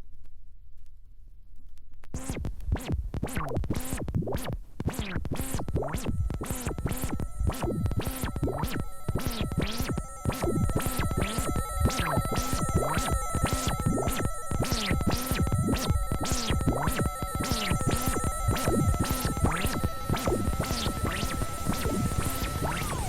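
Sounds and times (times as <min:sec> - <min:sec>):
sweeping electronic sounds: 0:02.2 - 0:23.0
steady high tone: 0:05.4 - 0:23.0.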